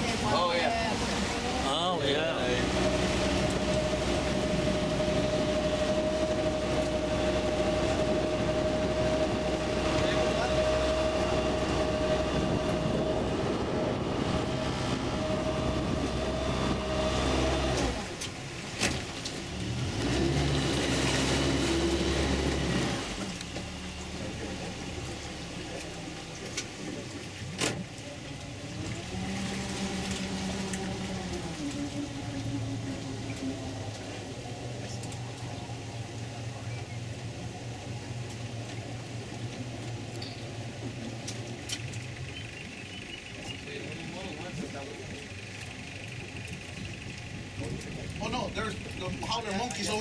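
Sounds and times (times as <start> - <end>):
boat motor droning: 0.0 - 50.0.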